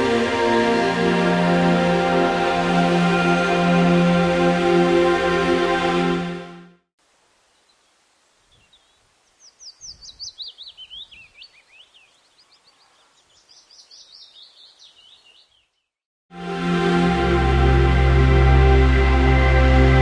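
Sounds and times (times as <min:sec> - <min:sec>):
faint outdoor hiss: 0:07.0 - 0:15.9
songbird chirping: 0:07.3 - 0:16.0.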